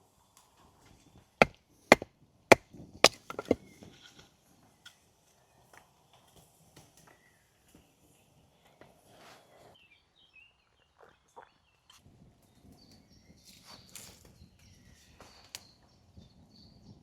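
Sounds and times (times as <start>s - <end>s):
wood chopping strikes: 1.4s - 3.6s
light knocks: 3.0s - 3.6s.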